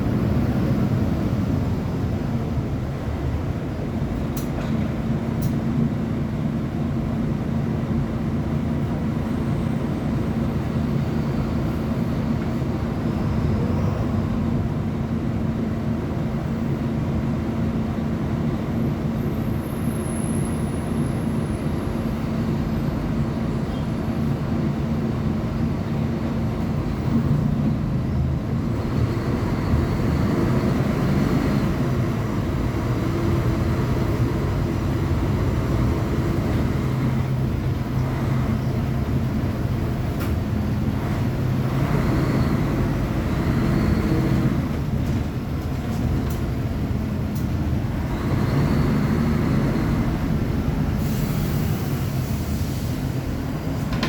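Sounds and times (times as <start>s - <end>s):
bus diesel engine droning: 0.0s - 54.0s.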